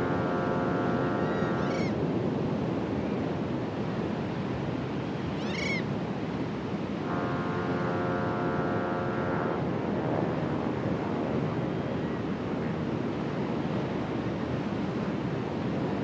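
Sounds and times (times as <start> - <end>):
ship's horn blast: 0.0 - 1.7, 6.9 - 11.8
sea wash: 0.0 - 16.0
gull calling: 1.2 - 2.0, 5.4 - 5.8.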